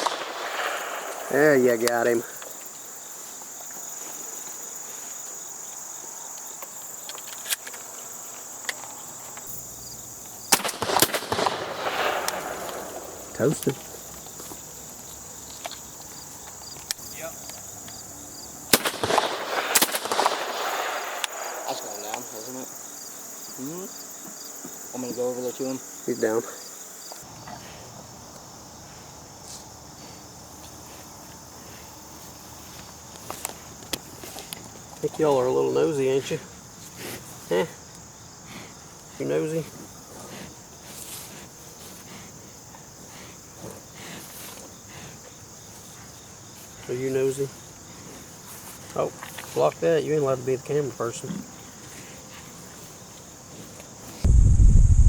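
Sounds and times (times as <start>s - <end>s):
field insects droning: 0.0s - 55.0s
microphone handling noise: 54.2s - 55.0s.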